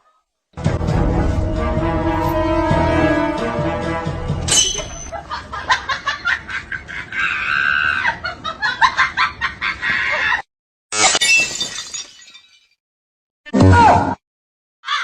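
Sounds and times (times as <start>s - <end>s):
comic cackling laughter: 5.1s - 10.4s.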